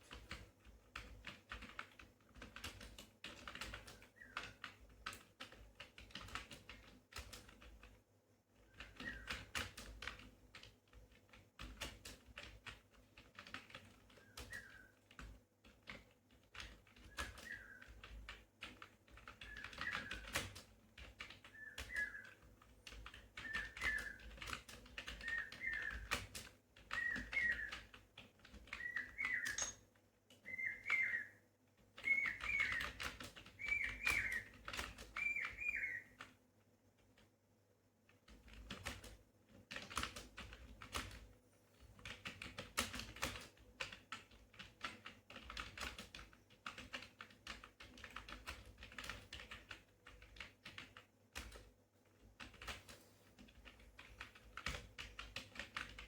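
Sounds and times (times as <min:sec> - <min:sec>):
fast keyboard typing: 0:00.0 - 0:08.0, 0:08.6 - 0:31.2, 0:31.8 - 0:36.3, 0:38.1 - 0:41.4, 0:42.0 - 0:56.0
short high chirp: 0:29.4 - 0:29.8.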